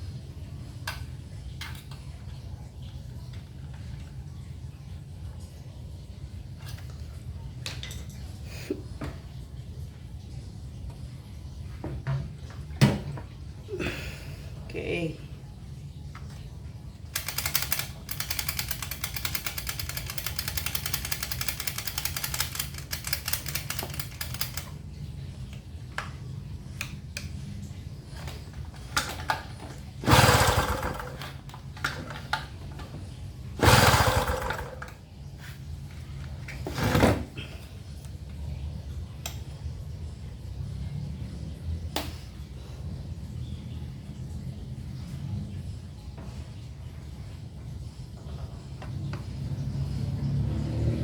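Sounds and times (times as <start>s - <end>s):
small engine sputtering: 17.1s - 24.7s, 30.0s - 32.2s, 33.6s - 35.0s
loud short engine bursts: 30.0s - 31.4s, 33.6s - 34.9s.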